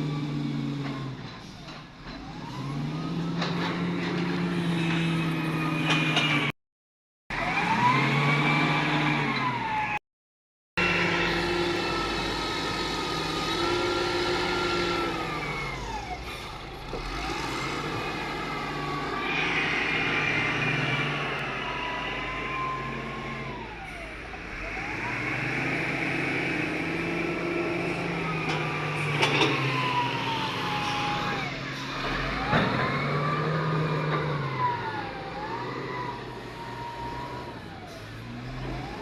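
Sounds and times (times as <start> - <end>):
diesel engine under load: 0.0 - 6.6, 7.3 - 10.0, 10.8 - 39.0
hydraulic whine: 10.8 - 39.0.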